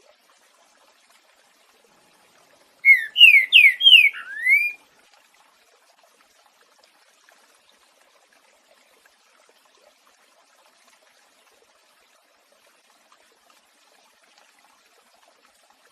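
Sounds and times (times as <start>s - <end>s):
bird whistling song: 2.8s - 4.8s.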